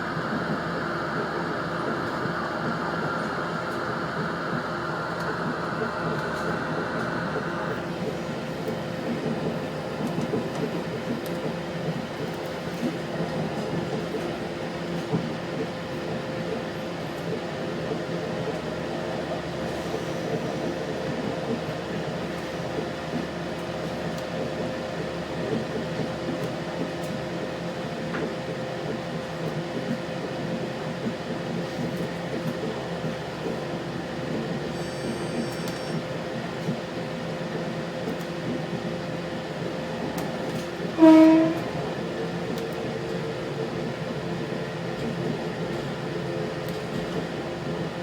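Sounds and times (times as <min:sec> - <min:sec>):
diesel railcar running inside: 0:00.0 - 0:48.0
train horn blast: 0:40.9 - 0:42.0.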